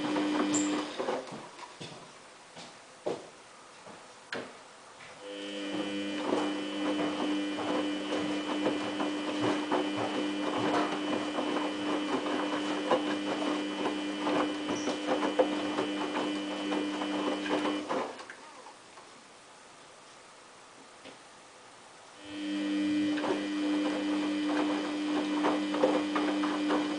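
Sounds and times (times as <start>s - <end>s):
washing machine motor whine: 0.0s - 1.5s, 5.2s - 18.6s, 22.2s - 26.9s
wet laundry tumbling in drum: 5.5s - 18.3s, 23.3s - 26.9s.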